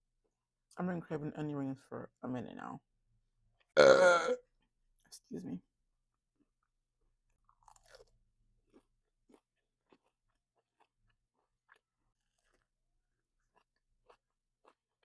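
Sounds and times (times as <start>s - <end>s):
person chewing food: 3.4s - 4.8s, 6.3s - 15.0s.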